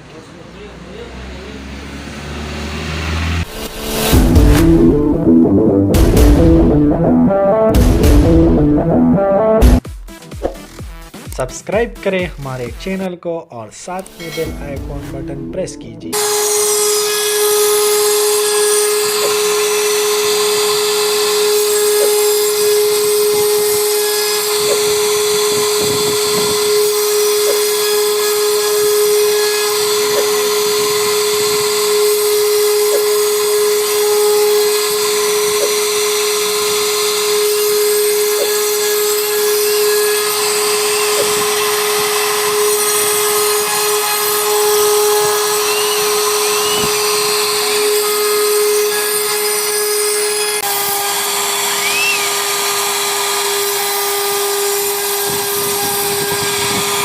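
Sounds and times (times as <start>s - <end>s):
router spindle whining: 16.2s - 57.0s.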